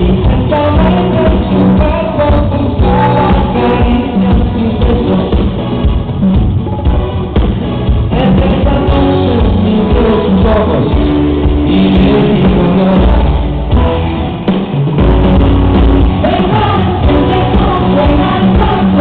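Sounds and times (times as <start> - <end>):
person singing: 0.0 - 5.6, 8.1 - 13.8, 16.0 - 19.0
live pop band playing: 0.0 - 19.0.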